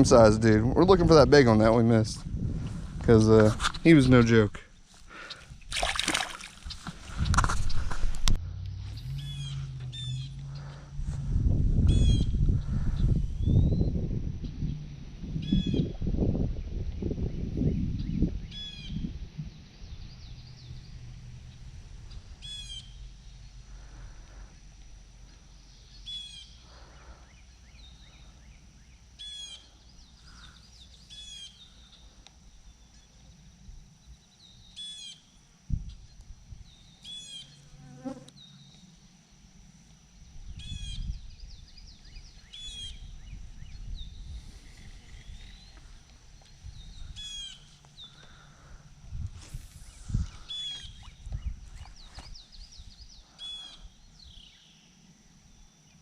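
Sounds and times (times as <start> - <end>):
high-pitched insect drone: 3.0 - 56.0
low thumps: 6.8 - 15.4
songbird chirping: 8.5 - 10.9, 17.3 - 23.8.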